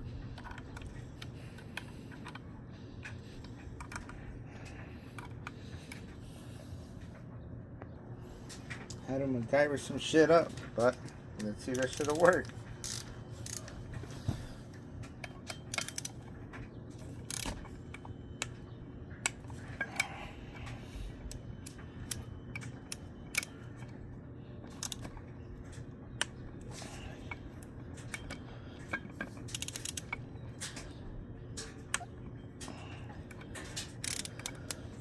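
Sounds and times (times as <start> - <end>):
steady low hum: 0.0 - 35.0
metallic clicks of hand tools: 28.0 - 30.8, 33.3 - 34.8.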